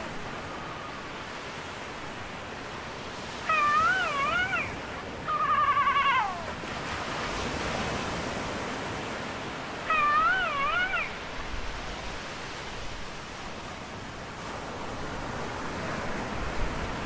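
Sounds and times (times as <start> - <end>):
warbling pitched cries: 3.4 - 6.7, 9.8 - 11.2.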